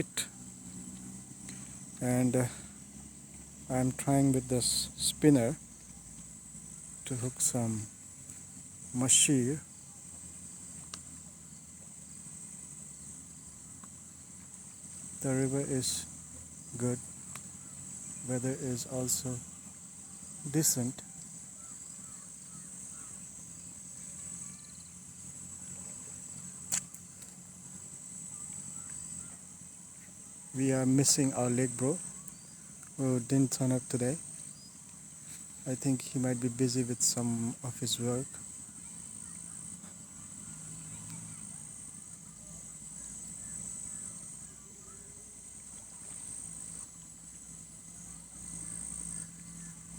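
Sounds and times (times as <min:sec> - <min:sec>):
high-pitched insect chorus: 0:00.0 - 0:49.9
sharp click: 0:26.7 - 0:27.3.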